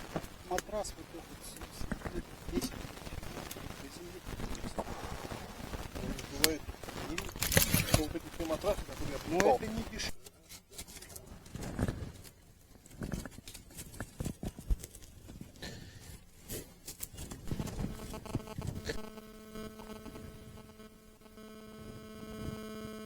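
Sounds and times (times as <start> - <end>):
electric hum: 0.0 - 10.3, 17.2 - 23.0.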